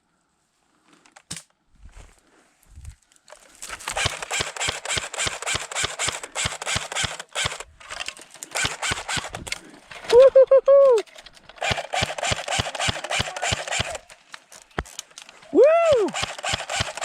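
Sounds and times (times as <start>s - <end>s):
airsoft guns firing full auto: 3.8s - 7.7s, 8.4s - 9.4s, 11.6s - 14.2s, 15.8s - 17.0s.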